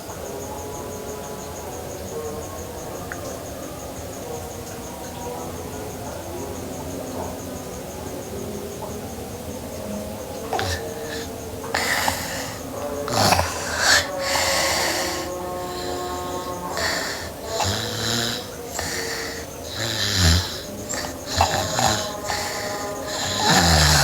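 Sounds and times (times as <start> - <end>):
girl snoring: 10.5 - 24.0.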